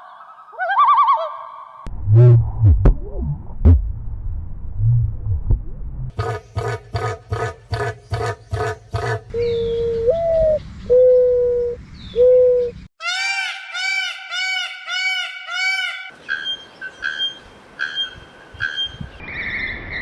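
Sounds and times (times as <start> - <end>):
low hooting bird call: 6.2 - 19.0.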